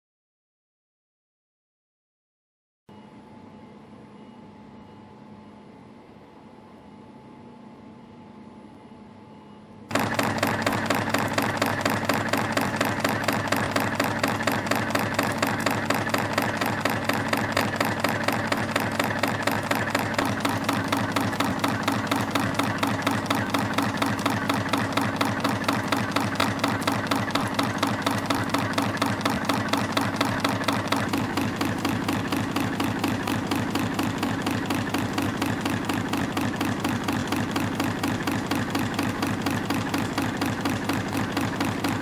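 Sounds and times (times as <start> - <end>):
sharp machine ticks: 9.9 - 42.0
spring coiling machine running: 9.9 - 42.0.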